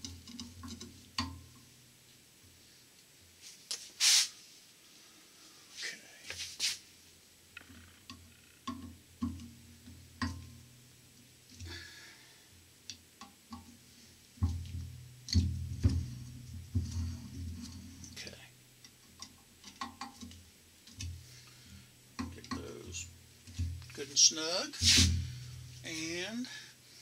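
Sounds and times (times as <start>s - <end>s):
hissing scrape: 4.0s - 4.4s, 5.7s - 6.8s, 24.8s - 25.5s.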